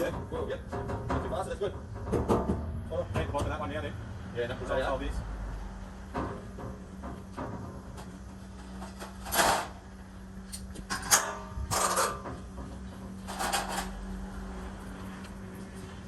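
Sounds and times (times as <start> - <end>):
steady low hum: 0.0 - 16.0
metal frame clanking and rattling: 8.7 - 9.8, 10.8 - 14.0.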